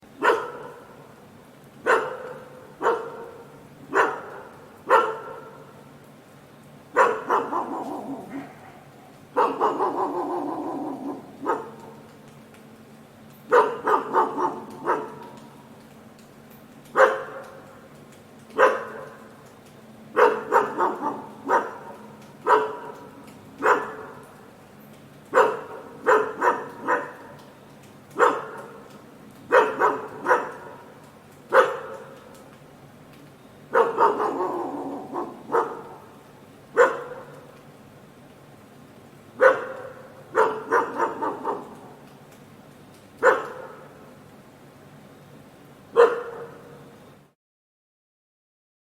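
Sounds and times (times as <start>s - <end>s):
dog barking: 0.2s - 1.0s, 1.8s - 5.7s, 6.9s - 12.1s, 13.5s - 15.4s, 16.9s - 17.7s, 18.6s - 19.3s, 20.1s - 24.3s, 25.3s - 27.4s, 28.1s - 28.9s, 29.5s - 32.4s, 33.7s - 37.5s, 39.4s - 42.0s, 43.2s - 44.0s, 45.9s - 46.8s.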